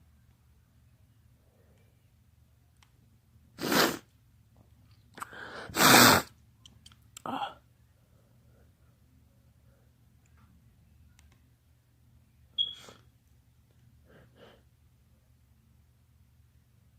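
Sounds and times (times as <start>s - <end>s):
quick in-breath: 5.2s - 6.3s
man sneezing: 5.8s - 6.3s.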